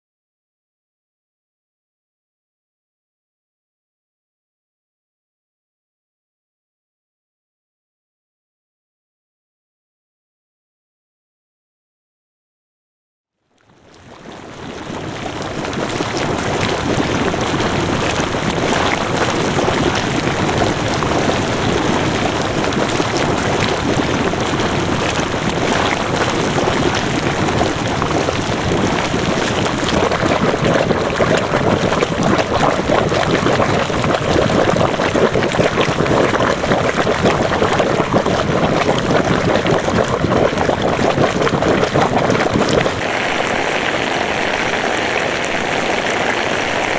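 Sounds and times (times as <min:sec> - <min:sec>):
water flowing and splashing: 0:13.6 - 0:46.9.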